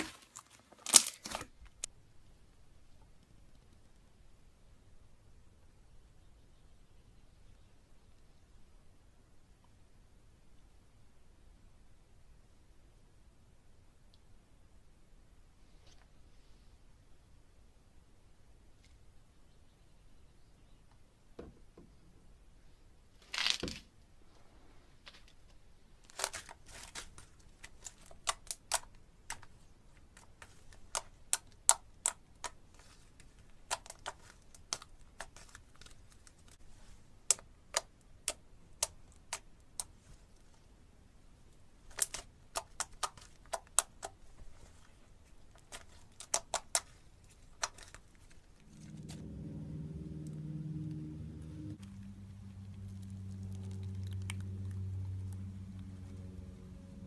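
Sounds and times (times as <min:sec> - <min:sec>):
low hum: 0:48.4 - 0:57.0.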